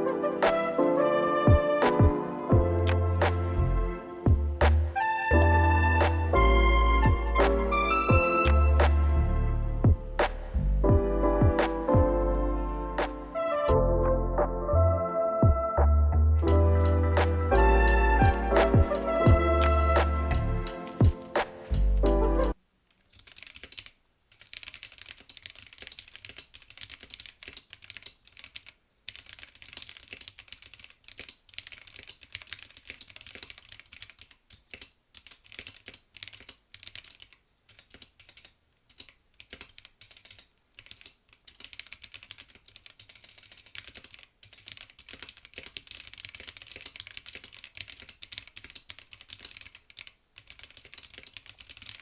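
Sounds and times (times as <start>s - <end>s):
mechanical keyboard typing: 22.9s - 52.0s.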